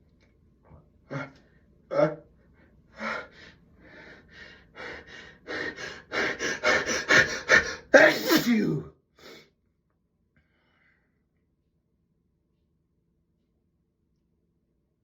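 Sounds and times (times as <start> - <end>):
person gasping breaths: 3.0 - 9.4
person sneezing: 7.9 - 9.4.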